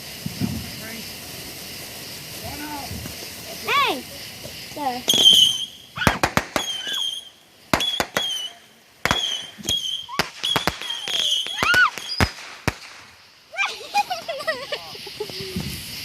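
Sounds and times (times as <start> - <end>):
fireworks bangs: 0.0 - 16.0
fireworks whistling: 0.0 - 16.0.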